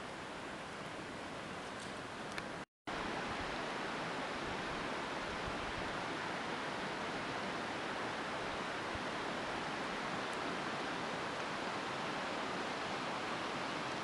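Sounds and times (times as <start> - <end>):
fast-flowing creek rushing: 2.9 - 14.0.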